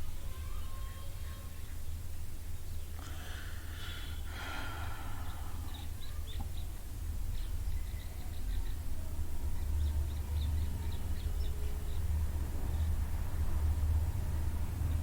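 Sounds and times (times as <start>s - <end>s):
steady low rumble: 6.8s - 15.0s.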